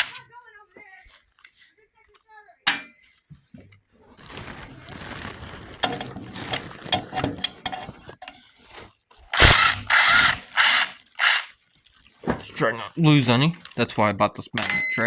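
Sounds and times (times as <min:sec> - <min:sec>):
impact driver rattling: 0:00.0 - 0:00.2, 0:09.3 - 0:11.5.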